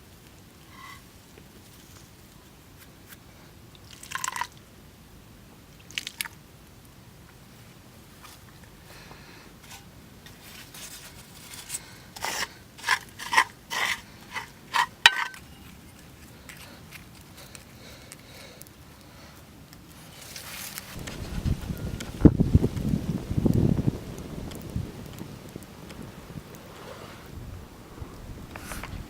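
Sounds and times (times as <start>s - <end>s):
low rushing noise: 20.9s - 29.0s.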